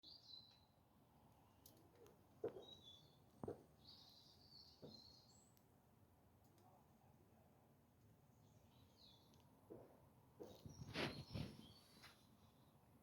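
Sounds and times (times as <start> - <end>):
faint bird chirps: 10.5 - 12.8.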